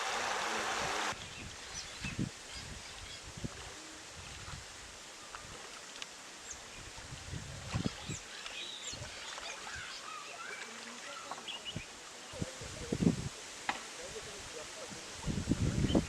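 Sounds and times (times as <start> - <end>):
outdoor background hiss: 0.0 - 16.0
birds chirping: 7.8 - 12.4.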